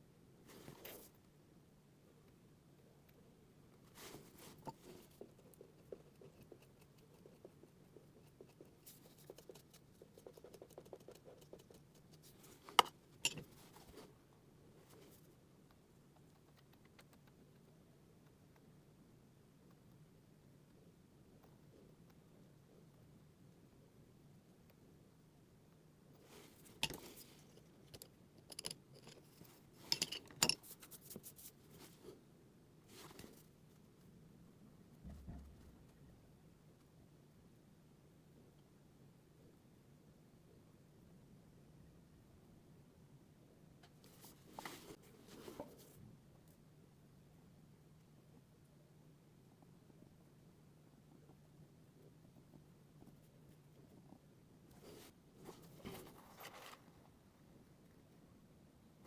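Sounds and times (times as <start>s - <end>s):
small tools clicking and clinking: 28.5s - 30.7s.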